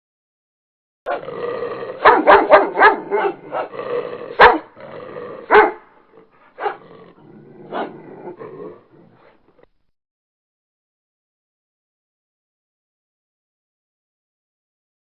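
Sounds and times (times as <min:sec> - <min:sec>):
dog barking: 0:01.1 - 0:01.3, 0:02.0 - 0:04.8, 0:05.4 - 0:06.9, 0:07.7 - 0:08.4.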